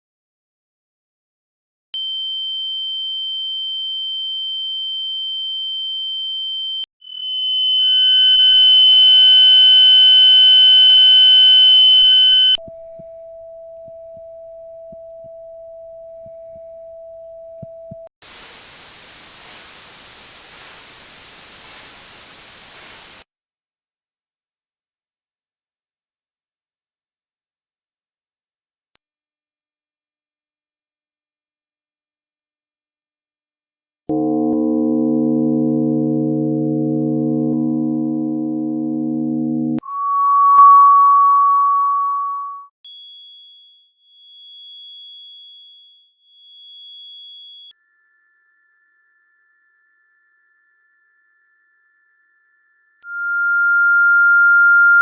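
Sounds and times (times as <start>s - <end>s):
high-pitched steady tone: 7.1s - 12.6s, 30.3s - 34.1s, 47.7s - 53.0s
buzzy tone: 7.2s - 12.6s, 32.4s - 34.1s, 47.7s - 53.0s
low steady tone: 47.7s - 53.0s.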